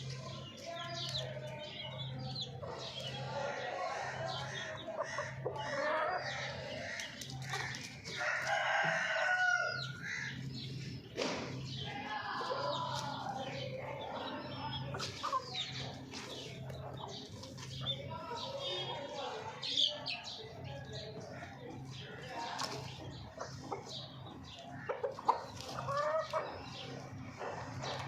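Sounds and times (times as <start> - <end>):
chickens clucking: 0.0 - 28.0
rooster crowing: 8.1 - 10.0.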